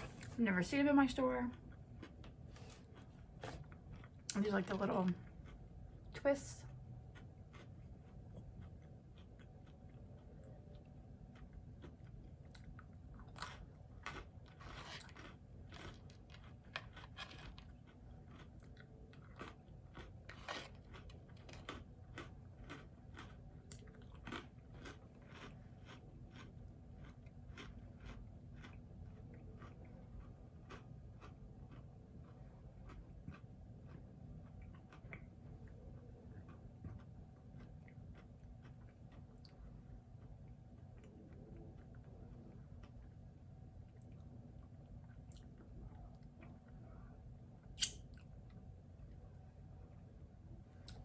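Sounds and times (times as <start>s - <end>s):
person crunching pretzels: 7.0s - 39.6s.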